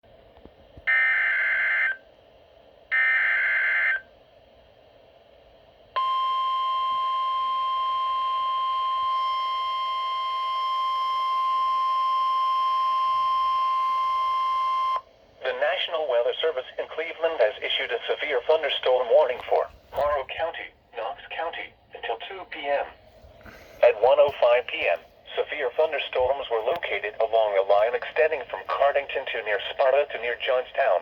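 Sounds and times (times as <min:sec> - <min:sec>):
steady alarm tone: 0:00.9 - 0:02.0, 0:02.9 - 0:04.1, 0:06.0 - 0:15.1.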